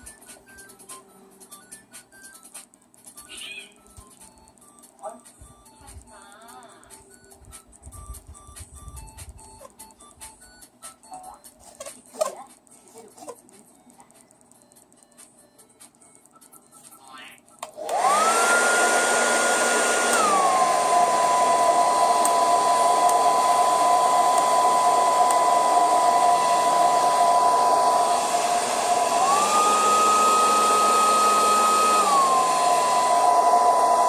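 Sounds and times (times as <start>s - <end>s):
hair dryer motor whine: 17.6s - 34.0s
hair dryer switch: 17.6s - 34.0s
hair dryer blowing air: 17.7s - 34.0s.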